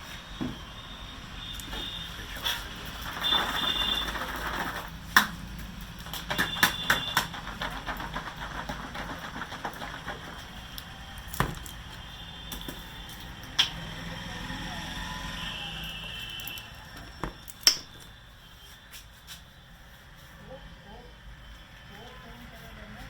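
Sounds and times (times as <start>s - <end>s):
hands rubbing head: 6.0s - 10.5s
quick taps on head: 6.1s - 10.5s.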